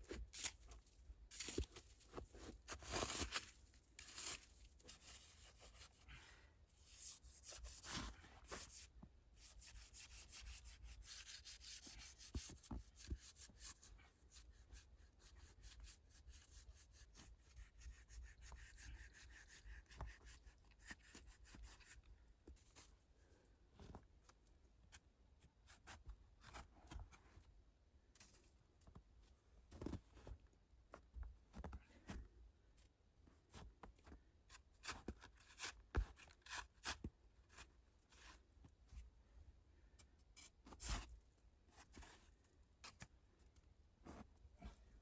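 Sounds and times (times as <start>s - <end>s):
rustling and scraping handling: 0.0s - 14.0s.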